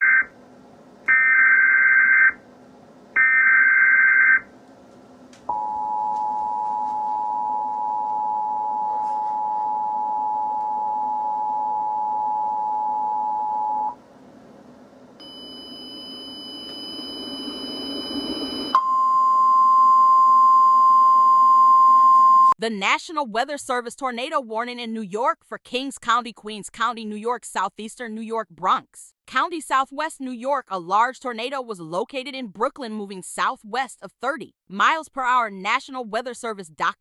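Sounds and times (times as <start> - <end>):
data burst tones: 15.2 - 18.8
steady warning tone: 15.2 - 18.8
two-tone attention signal: 15.2 - 22.5.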